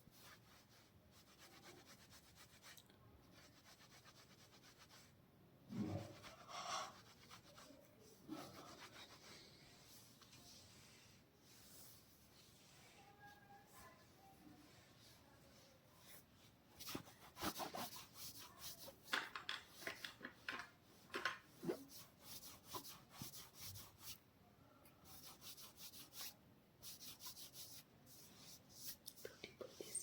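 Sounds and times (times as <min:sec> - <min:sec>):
hands rubbing hair and scalp: 0:16.0 - 0:20.6.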